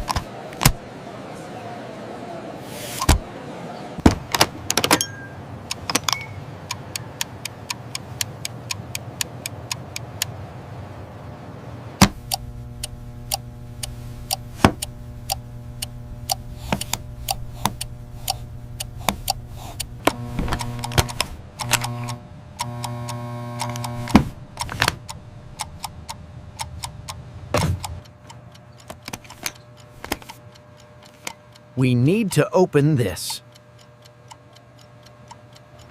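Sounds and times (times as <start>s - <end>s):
sharp clicks and taps: 5.7s - 10.3s, 12.0s - 26.0s, 27.6s - 31.4s
low electronic hum: 12.1s - 34.1s.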